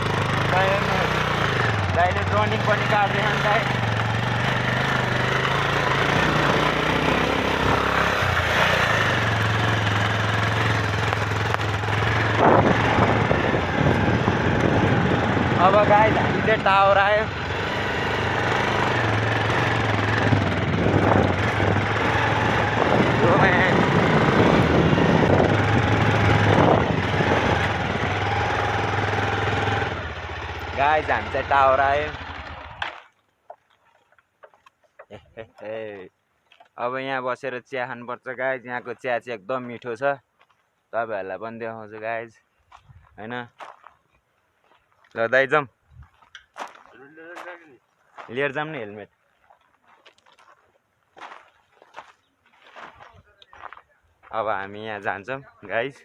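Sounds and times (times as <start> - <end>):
road and wind rush: 0.0 - 32.9
motorcycle engine under load: 0.0 - 33.1.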